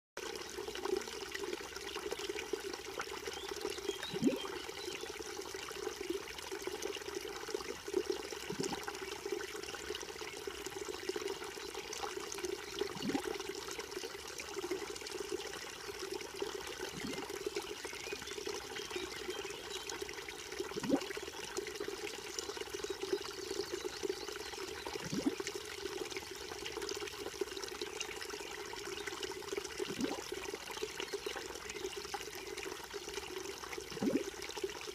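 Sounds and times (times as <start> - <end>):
brook trickling and gurgling: 0.2 - 34.9
deep gurgling plop: 12.8 - 13.4, 16.9 - 17.4, 20.7 - 21.2, 24.9 - 25.5, 29.8 - 30.4, 33.9 - 34.4.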